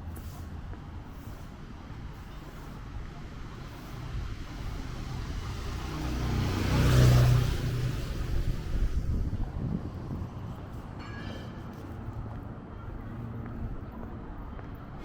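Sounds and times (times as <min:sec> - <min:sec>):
motor vehicle passing: 0:04.2 - 0:10.2.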